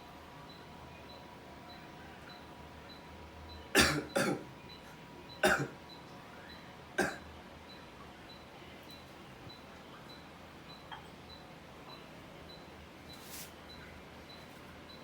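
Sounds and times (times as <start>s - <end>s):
man coughing forcefully: 3.8s - 4.4s, 5.4s - 5.8s, 7.0s - 7.2s.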